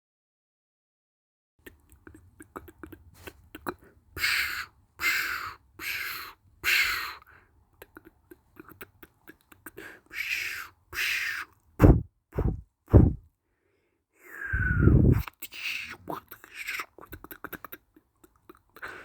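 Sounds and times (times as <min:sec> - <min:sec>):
person hissing exhalations: 0:04.2 - 0:07.3, 0:09.7 - 0:13.2, 0:14.2 - 0:16.0
deep booming thumps: 0:11.8 - 0:13.2.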